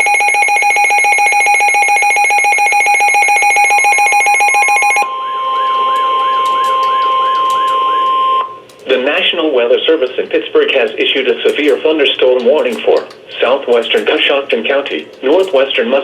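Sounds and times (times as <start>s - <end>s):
shrill pulsing electronic alarm: 0.0s - 8.6s
warbling siren-like alarm: 0.0s - 8.6s
steady alarm tone: 0.0s - 8.7s.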